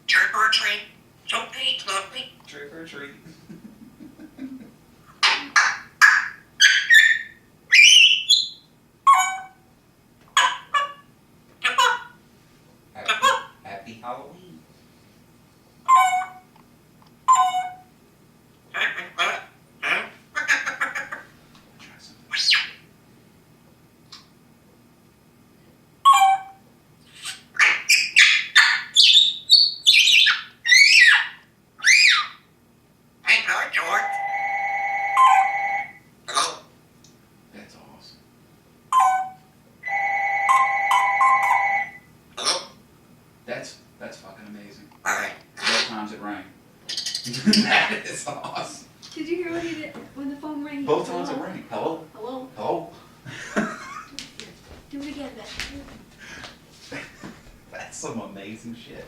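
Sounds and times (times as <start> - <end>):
parrot squawking and whistling: 0.0 - 2.1, 5.2 - 9.6, 15.9 - 16.5, 17.3 - 17.9, 18.7 - 21.2, 22.3 - 22.8, 26.0 - 32.5, 33.2 - 36.7, 38.9 - 42.8, 46.9 - 47.6.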